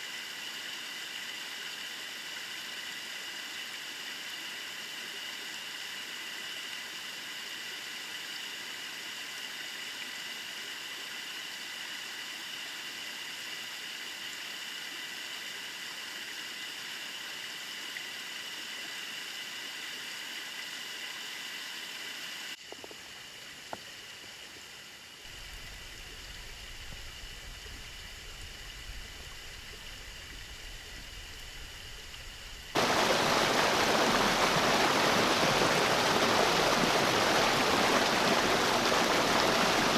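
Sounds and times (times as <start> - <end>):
creek water flowing over rocks: 0.0 - 39.9
loud water cascade: 25.3 - 39.9.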